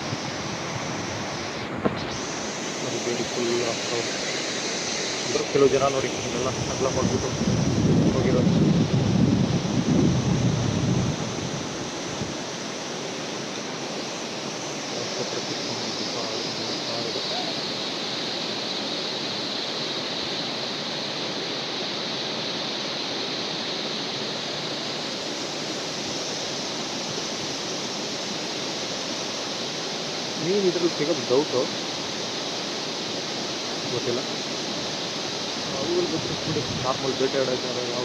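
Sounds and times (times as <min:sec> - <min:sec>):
waterfall rushing: 0:00.0 - 0:38.0.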